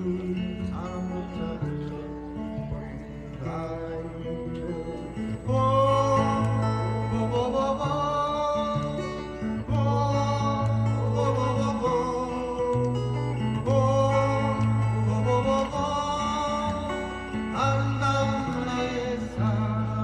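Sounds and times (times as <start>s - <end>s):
guitar accompaniment: 0.0s - 20.0s
person singing wavering notes: 0.0s - 20.0s
bass notes: 2.6s - 20.0s.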